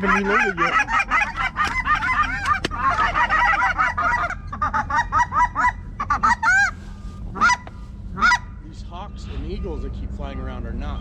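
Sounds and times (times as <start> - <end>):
geese honking: 0.0 - 11.0.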